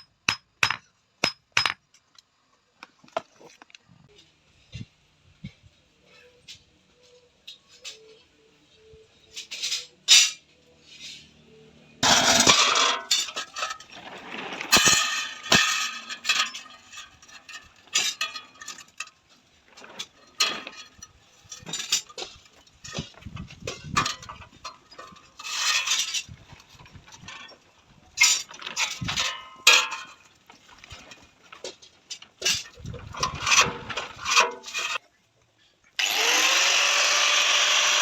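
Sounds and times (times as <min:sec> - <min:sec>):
sheet iron clanking and scraping: 0:12.0 - 0:27.6, 0:28.2 - 0:35.0.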